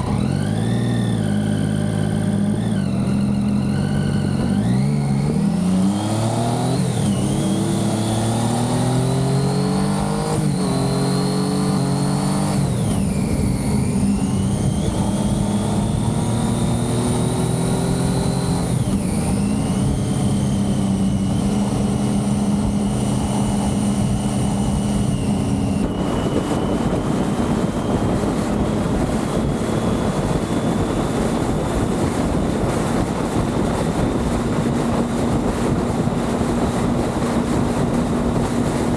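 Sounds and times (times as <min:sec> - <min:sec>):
motorcycle engine accelerating: 0:00.0 - 0:38.9
wind noise rushing: 0:11.4 - 0:38.9.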